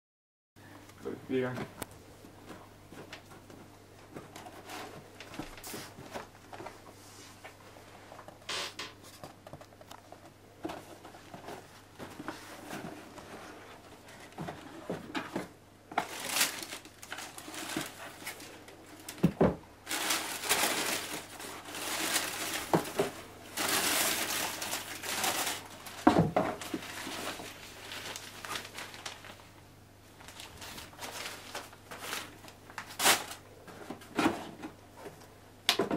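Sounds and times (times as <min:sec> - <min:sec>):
paper and cardboard crinkling: 0:02.4 - 0:08.4, 0:09.0 - 0:35.3.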